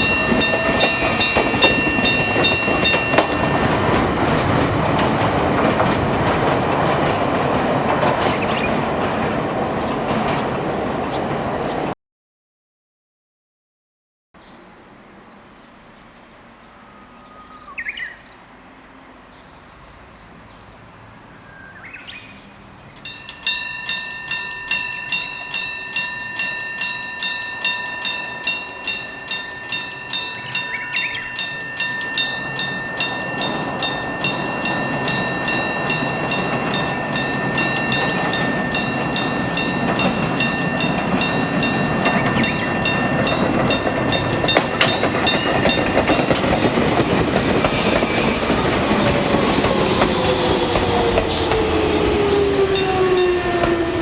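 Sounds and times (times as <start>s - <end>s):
electric level-crossing bell ringing: 0.0s - 8.2s, 23.0s - 51.1s, 52.0s - 54.0s
train rumbling: 0.0s - 12.0s, 14.5s - 54.0s.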